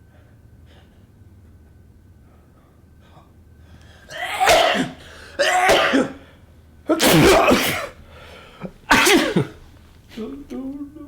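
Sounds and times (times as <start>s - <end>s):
person sneezing loudly: 4.1s - 6.3s, 6.9s - 9.7s.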